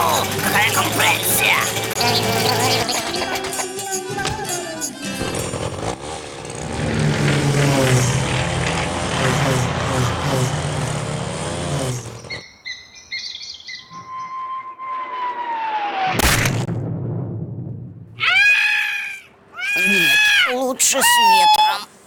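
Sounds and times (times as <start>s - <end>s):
rough wavering mechanical noise: 0.0s - 12.4s
bird-like chirps: 12.2s - 14.7s
falling whistle: 13.8s - 16.2s
sharp thud: 16.1s - 18.2s.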